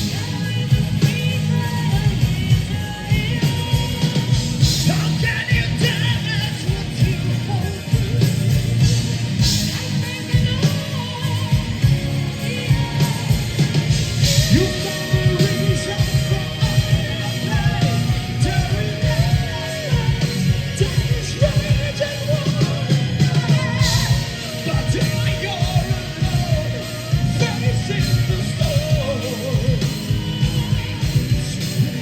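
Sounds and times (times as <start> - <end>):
metal band playing live: 0.0 - 32.0
person singing: 0.0 - 32.0.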